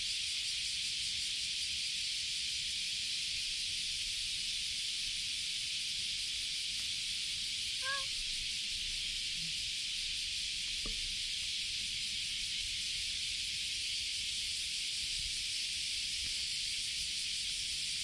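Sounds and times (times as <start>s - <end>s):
cat meowing: 7.8s - 8.2s.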